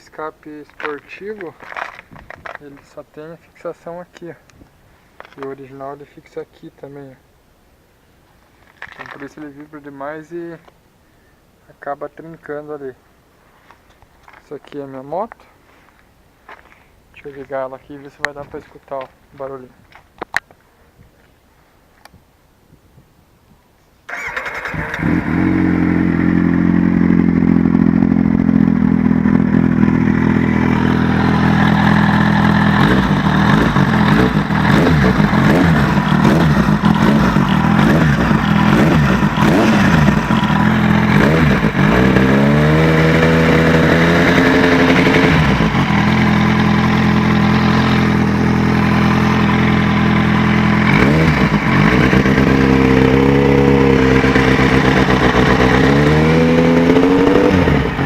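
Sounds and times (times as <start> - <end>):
motorcycle engine idling and revving: 24.1 - 58.0.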